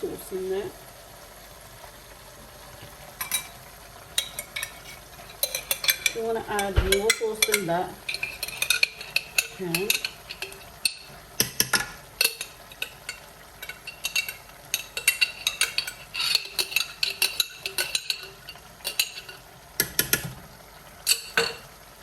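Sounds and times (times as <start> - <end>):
spoon clinking and scraping pan: 3.2 - 3.6, 4.2 - 20.3, 21.0 - 21.7.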